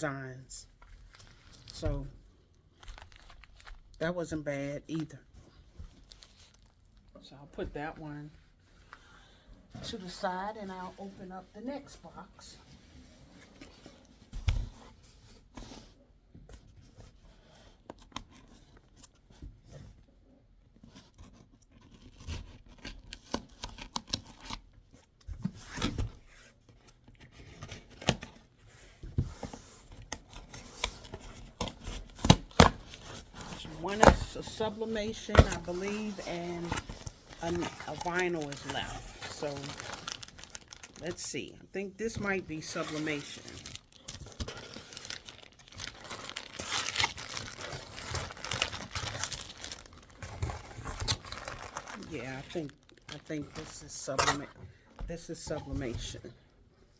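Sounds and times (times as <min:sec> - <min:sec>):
packing tape and cardboard tearing: 0:20.8 - 0:24.8, 0:29.2 - 0:41.2, 0:42.6 - 0:54.5.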